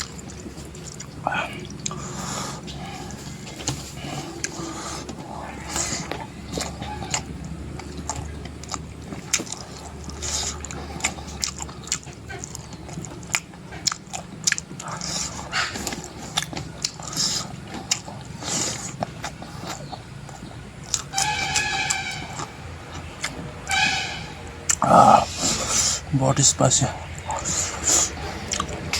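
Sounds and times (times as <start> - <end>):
person chewing food: 0.0 - 28.9
steady pitched tone call: 21.1 - 27.8.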